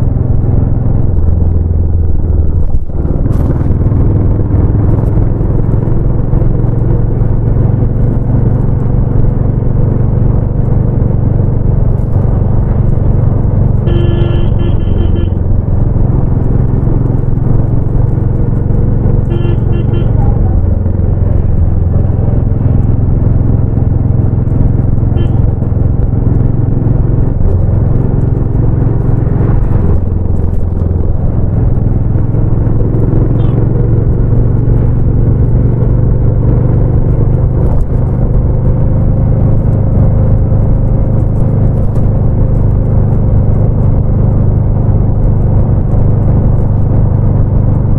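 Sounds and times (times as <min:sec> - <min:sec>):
motorcycle engine running: 0:00.0 - 0:47.9
short horn beeps: 0:13.9 - 0:15.4, 0:19.3 - 0:20.4, 0:25.2 - 0:25.4.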